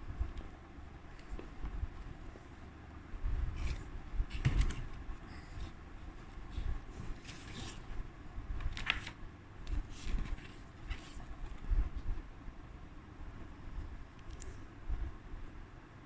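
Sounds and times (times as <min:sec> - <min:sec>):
packaging rustling: 0:06.4 - 0:11.5.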